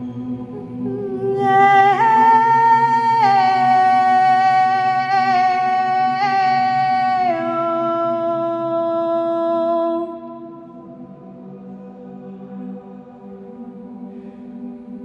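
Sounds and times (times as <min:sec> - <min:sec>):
woman singing wordless held notes: 0:00.4 - 0:10.2.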